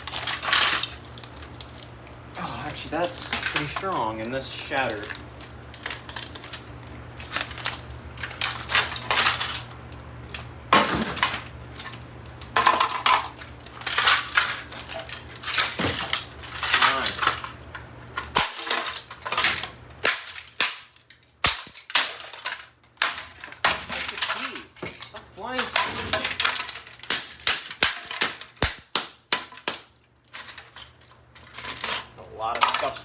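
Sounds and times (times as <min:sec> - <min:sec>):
keyboard being smashed: 0:00.0 - 0:33.0.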